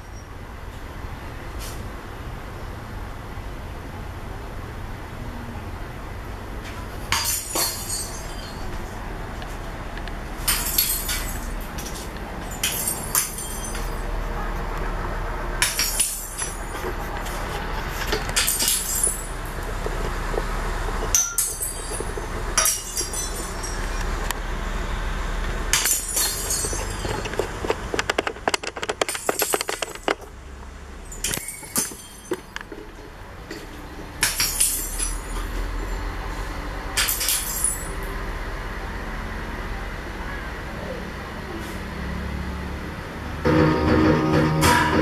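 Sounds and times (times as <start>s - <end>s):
glass breaking and clinking: 7.1s - 8.8s, 10.4s - 14.1s, 15.6s - 16.8s, 18.3s - 19.6s, 21.0s - 24.2s, 25.7s - 30.3s, 31.0s - 32.7s, 34.2s - 35.9s, 37.0s - 37.9s.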